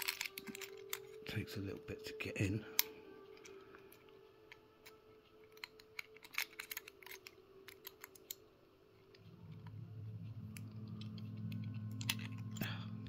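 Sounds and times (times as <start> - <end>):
lock pick clicking and scraping: 0.0 - 1.3, 2.7 - 8.4, 10.5 - 12.7
low steady hum: 0.0 - 13.0.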